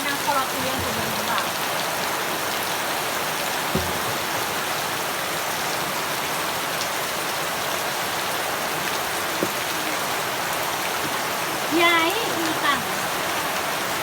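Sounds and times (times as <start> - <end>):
heavy rain falling: 0.0 - 14.0
faint tap: 3.7 - 4.2, 9.4 - 9.7.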